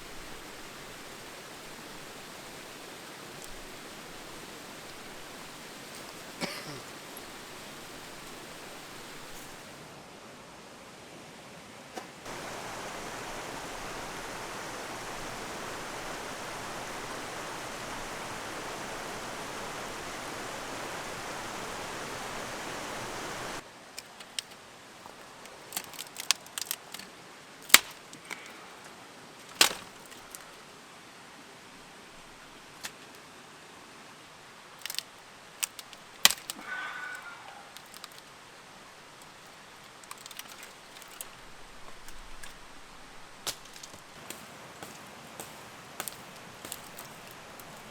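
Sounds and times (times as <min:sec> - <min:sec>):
river rushing: 0:00.0 - 0:47.9
sharp cracks and knocks: 0:24.0 - 0:28.6, 0:29.4 - 0:30.6, 0:34.8 - 0:36.7, 0:37.7 - 0:38.3, 0:39.2 - 0:42.7, 0:43.3 - 0:47.9.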